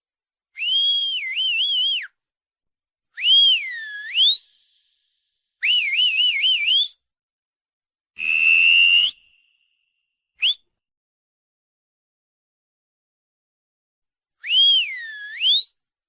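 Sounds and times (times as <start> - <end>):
whistles: 0.6 - 2.3, 3.1 - 7.2, 8.2 - 10.8, 14.4 - 15.9.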